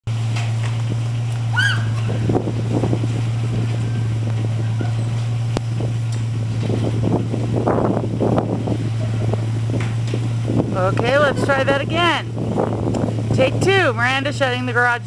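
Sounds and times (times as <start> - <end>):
wind buffeting microphone: 0.5 - 15.0.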